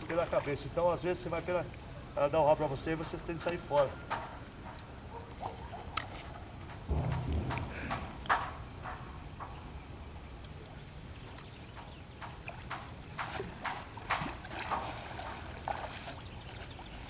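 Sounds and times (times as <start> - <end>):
fish thrashing and splashing: 12.5 - 17.0.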